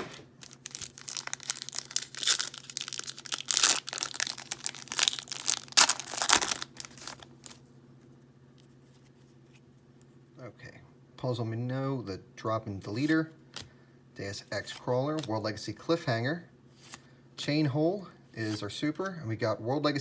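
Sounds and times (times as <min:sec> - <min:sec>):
foil pack tearing and crinkling: 0:00.0 - 0:07.6.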